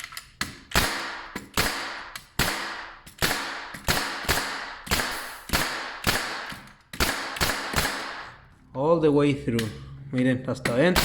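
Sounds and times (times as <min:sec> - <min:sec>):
pneumatic nailer firing: 0:00.4 - 0:08.3.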